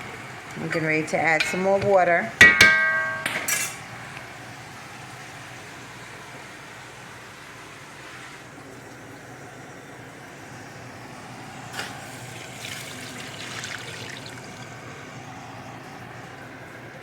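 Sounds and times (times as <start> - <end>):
water pouring into a pot: 8.4 - 16.4
water splashing: 11.6 - 15.3.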